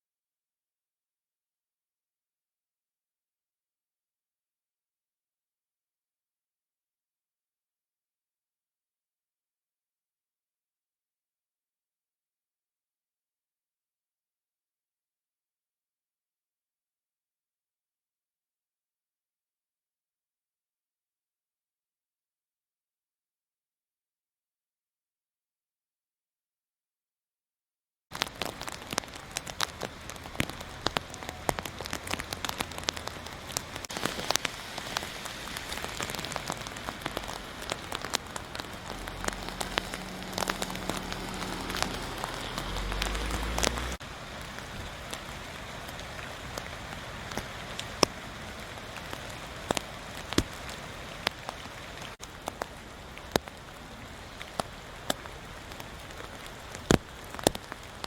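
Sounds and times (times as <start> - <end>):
rain falling: 28.1 - 58.0.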